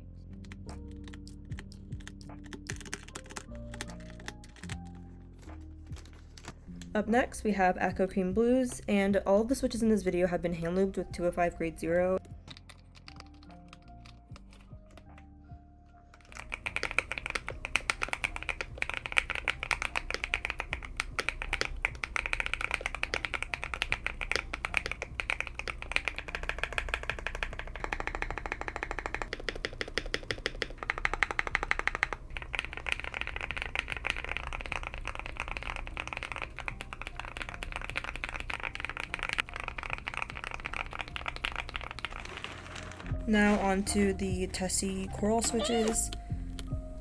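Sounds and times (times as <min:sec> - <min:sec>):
mechanical keyboard typing: 0:00.4 - 0:05.0, 0:12.2 - 0:15.2, 0:16.2 - 0:42.6.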